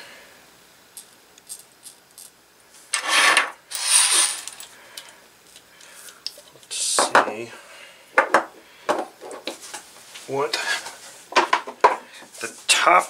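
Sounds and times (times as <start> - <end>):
rubbing rasping scrapes: 3.0 - 4.3.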